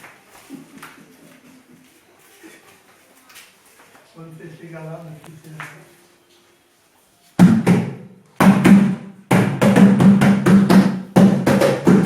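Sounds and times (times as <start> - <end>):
drum beating folk rhythm: 7.4 - 12.0.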